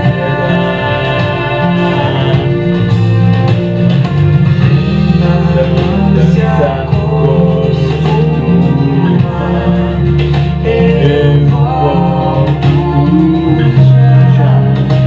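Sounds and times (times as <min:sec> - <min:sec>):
person singing long held notes: 0:00.0 - 0:03.0
instrumental accompaniment: 0:00.0 - 0:15.0.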